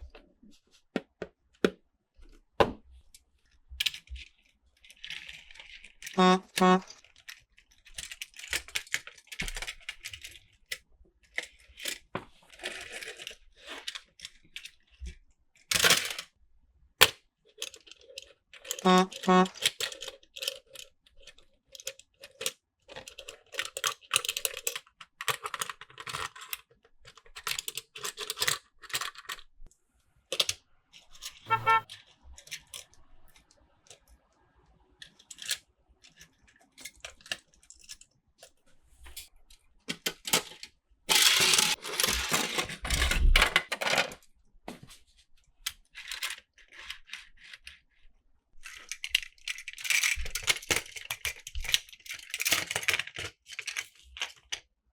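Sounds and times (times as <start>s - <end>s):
plastic toy pieces clicking: 3.8s - 10.4s, 15.7s - 16.3s, 17.0s - 29.5s, 35.0s - 38.1s, 39.9s - 44.2s, 48.6s - 54.6s
toy cars rattling: 3.8s - 10.5s, 15.7s - 16.3s, 17.6s - 29.5s, 39.9s - 44.2s, 48.6s - 54.5s.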